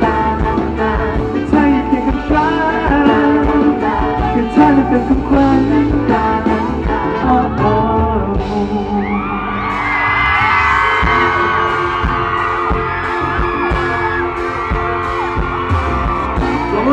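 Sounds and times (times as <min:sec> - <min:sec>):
live pop song with singer: 0:00.0 - 0:16.9
crowd screaming: 0:08.7 - 0:16.9.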